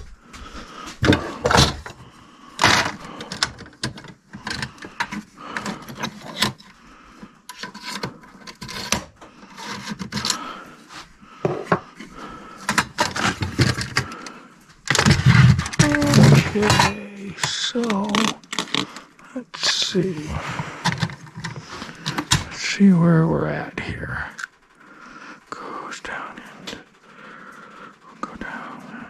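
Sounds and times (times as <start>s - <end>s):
objects knocking and scraping: 0.9s - 6.8s, 7.5s - 10.4s, 11.0s - 14.3s, 14.9s - 19.0s, 20.2s - 22.6s.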